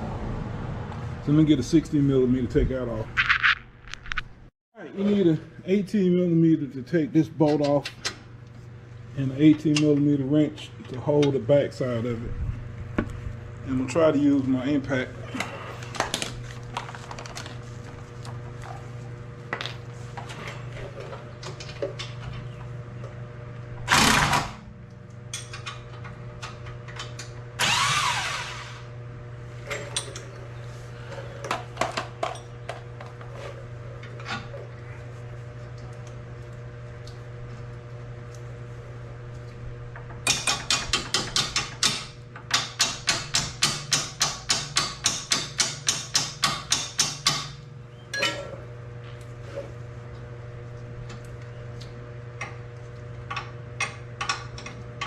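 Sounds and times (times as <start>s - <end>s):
steady low hum: 0.0s - 55.0s
impact wrench bursts: 23.9s - 24.6s, 27.6s - 28.9s.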